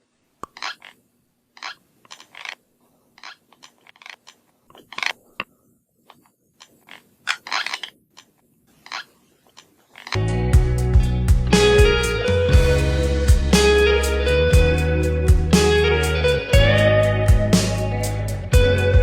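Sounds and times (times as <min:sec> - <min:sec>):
teeth grinding: 0:00.4 - 0:01.0, 0:01.6 - 0:05.3.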